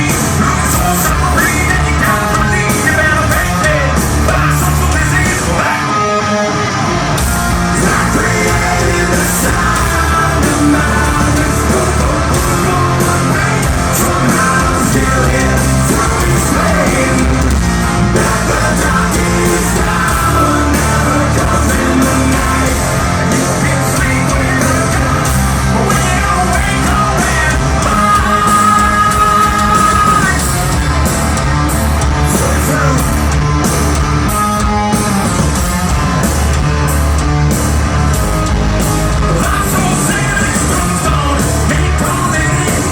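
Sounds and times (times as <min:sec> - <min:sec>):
bass and drums: 0:00.0 - 0:06.0, 0:06.6 - 0:42.9
distorted electric guitars: 0:00.0 - 0:42.9.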